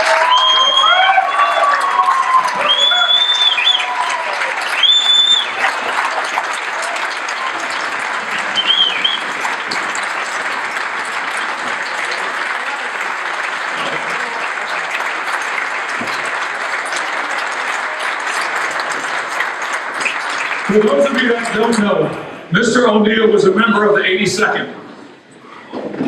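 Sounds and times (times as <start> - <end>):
crowd applauding: 0.0 - 23.0
short whistle: 0.3 - 0.9, 2.6 - 3.9, 4.7 - 5.6, 8.6 - 9.3.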